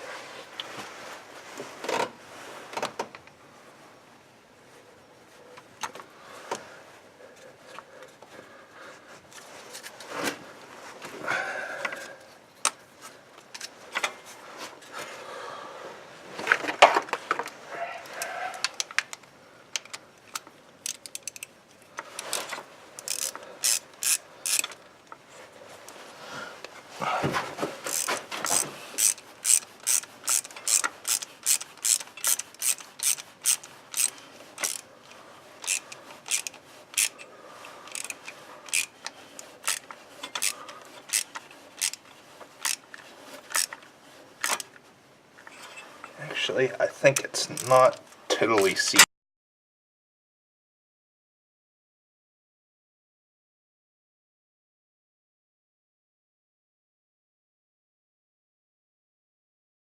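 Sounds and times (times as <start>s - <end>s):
socket ratchet clicking: 23.0s - 24.8s, 27.9s - 34.8s, 35.6s - 37.2s, 37.9s - 39.0s, 39.6s - 42.9s, 43.5s - 43.8s.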